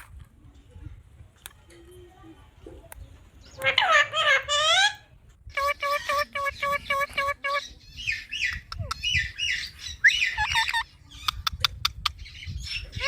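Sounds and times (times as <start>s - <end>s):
parrot calling: 3.6s - 10.9s.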